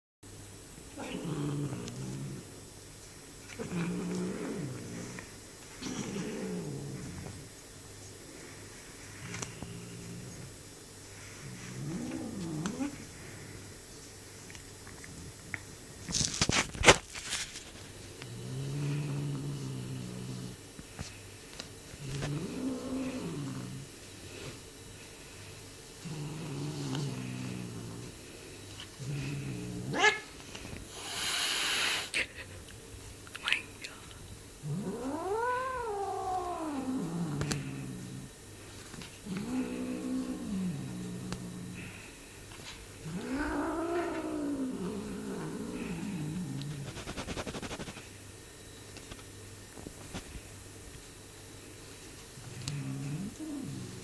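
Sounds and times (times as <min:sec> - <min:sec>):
kitten growling: 0:00.9 - 0:02.5, 0:03.5 - 0:07.5, 0:11.4 - 0:13.2, 0:18.2 - 0:20.6, 0:22.0 - 0:24.6, 0:26.0 - 0:28.2, 0:28.8 - 0:30.3, 0:34.6 - 0:42.1, 0:42.9 - 0:48.0, 0:52.4 - 0:54.0.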